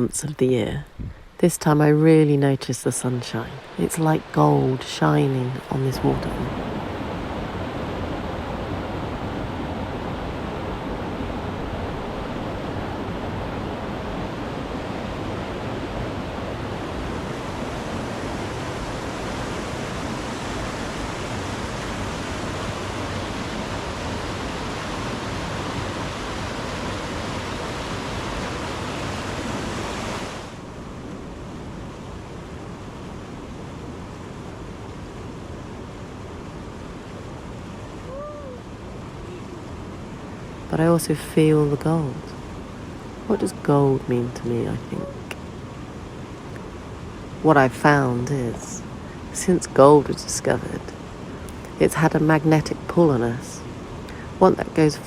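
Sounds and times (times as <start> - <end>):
waterfall rushing: 5.1 - 30.6.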